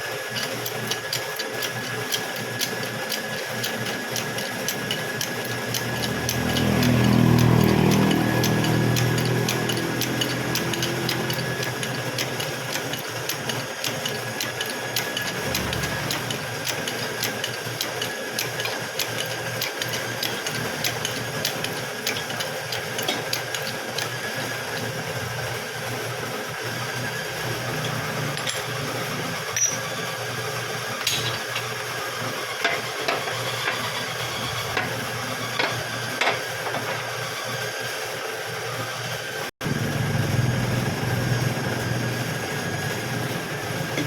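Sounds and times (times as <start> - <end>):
rapid mechanical ticking: 0.3 - 24.9.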